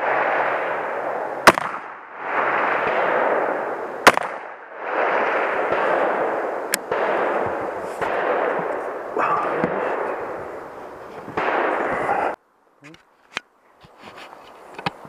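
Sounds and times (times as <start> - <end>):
rifle shot: 0.0 - 10.7, 11.3 - 12.3.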